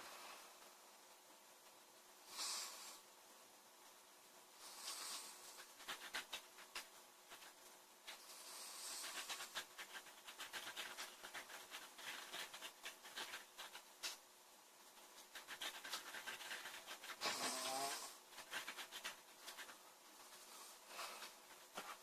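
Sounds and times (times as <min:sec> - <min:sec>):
woman snoring: 0:17.2 - 0:18.2.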